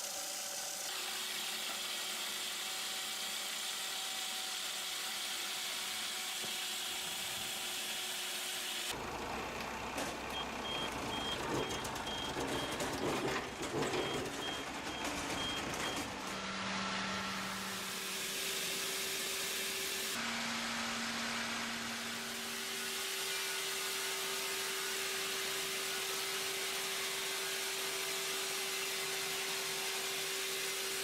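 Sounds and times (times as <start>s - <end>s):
heavy machinery humming: 9.0s - 19.1s
machine clatter: 10.0s - 16.4s.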